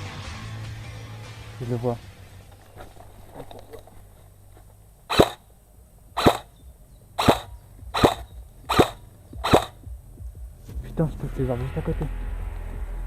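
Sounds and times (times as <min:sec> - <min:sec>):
airsoft rifle shots: 0:05.1 - 0:05.5, 0:06.2 - 0:06.6, 0:07.2 - 0:09.9.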